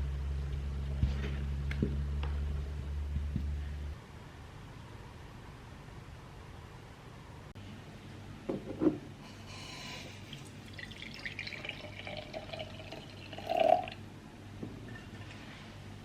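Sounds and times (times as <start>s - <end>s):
water running at a sink: 10.3s - 13.9s.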